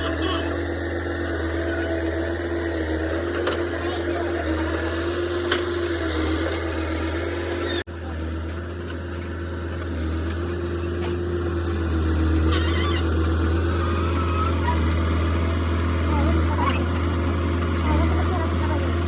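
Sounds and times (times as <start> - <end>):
heavy diesel engine droning: 0.0 - 19.0.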